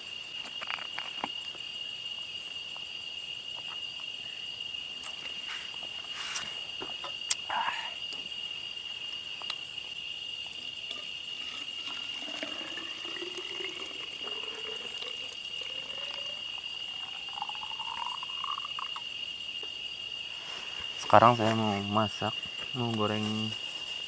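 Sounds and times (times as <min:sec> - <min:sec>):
crickets chirring: 0:00.0 - 0:24.0
water poured into a container: 0:10.9 - 0:19.0.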